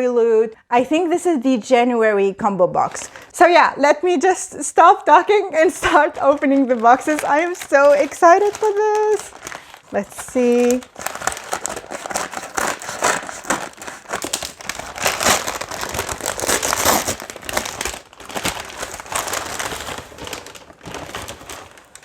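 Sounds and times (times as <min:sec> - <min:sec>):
packaging crinkling and rustling: 0:05.6 - 0:22.0.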